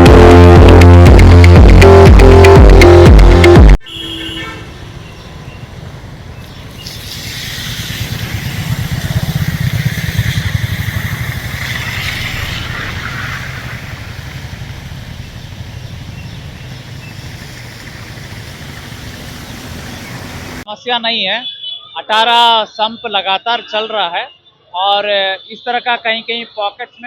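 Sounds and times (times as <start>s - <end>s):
vehicle engine passing by: 5.0s - 20.6s.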